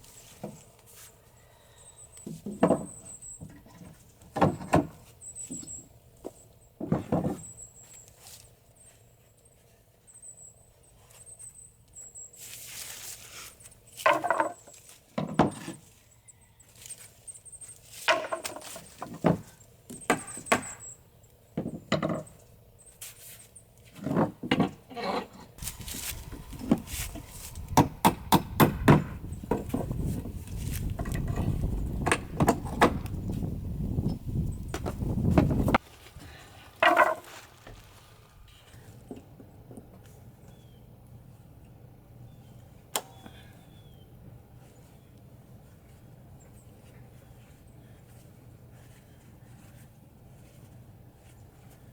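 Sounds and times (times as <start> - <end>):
hammer blows on wood: 25.6 - 29.8.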